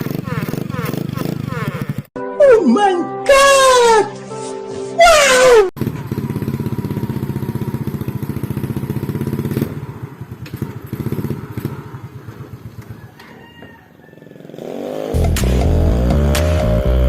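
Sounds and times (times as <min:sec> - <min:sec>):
small motorcycle engine idling: 0:00.0 - 0:02.1, 0:05.8 - 0:15.0.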